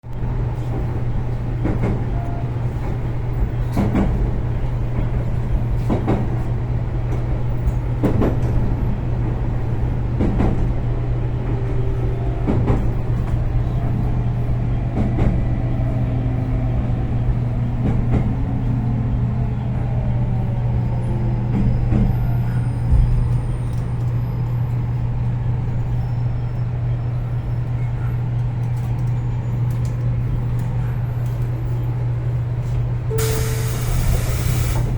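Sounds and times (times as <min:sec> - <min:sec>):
steady train hum: 0:00.0 - 0:34.9
train halting thump: 0:33.1 - 0:34.9.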